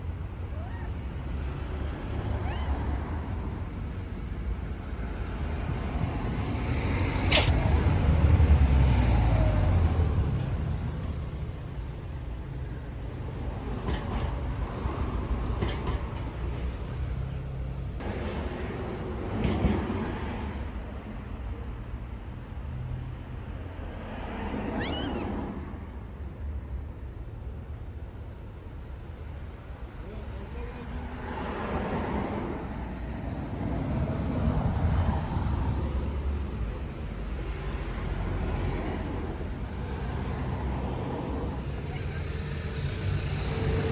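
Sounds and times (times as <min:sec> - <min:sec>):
faint short rising chirp: 0:07.3 - 0:07.6
cat meowing: 0:24.8 - 0:25.4.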